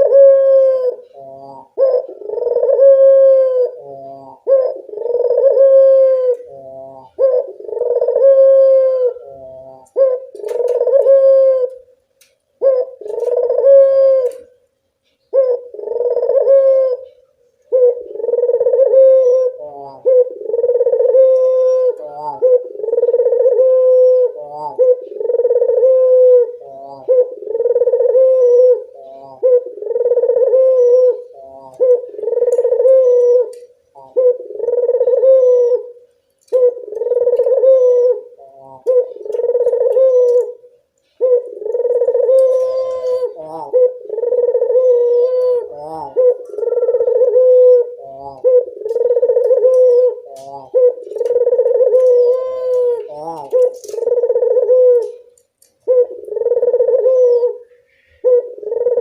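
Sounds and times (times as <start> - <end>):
dove cooing: 0.0 - 11.9, 12.6 - 14.6, 15.2 - 59.0.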